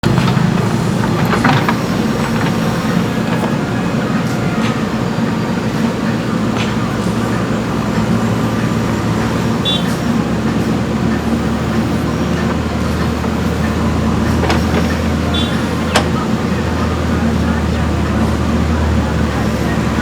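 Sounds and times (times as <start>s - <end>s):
diesel engine running: 0.0s - 20.0s
faint knocks: 12.4s - 16.8s.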